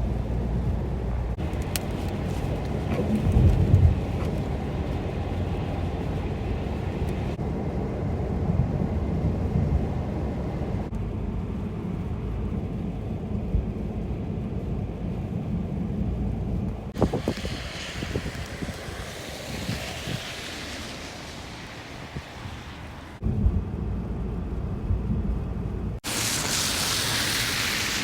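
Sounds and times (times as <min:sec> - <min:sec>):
highway traffic rumble: 0:00.0 - 0:28.0.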